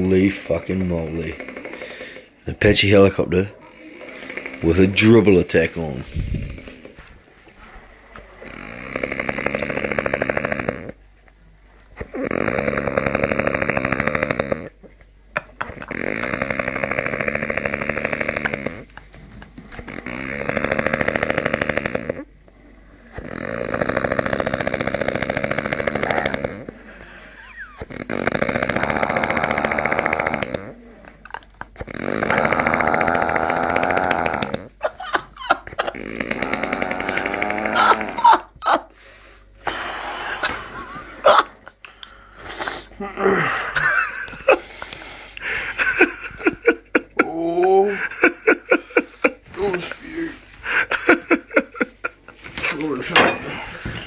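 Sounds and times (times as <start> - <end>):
man snoring heavily: 0.0 - 6.9, 8.4 - 11.0, 12.0 - 14.8, 15.8 - 18.9, 19.8 - 22.3, 23.2 - 30.9, 31.9 - 34.7, 35.9 - 38.3, 42.4 - 43.9.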